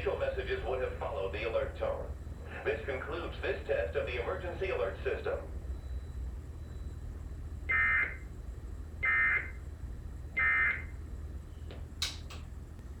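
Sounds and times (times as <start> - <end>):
clicks: 11.7 - 12.5.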